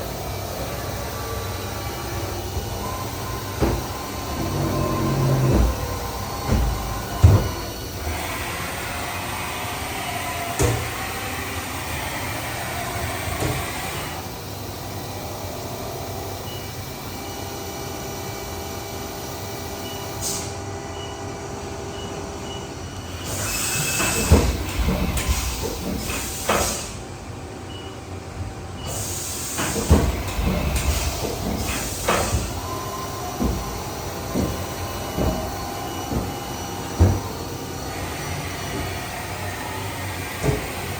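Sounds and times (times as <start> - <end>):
machining center hum: 0.0 - 40.9
whining machine tones: 1.0 - 8.2
clanks and knocks: 3.6 - 7.6.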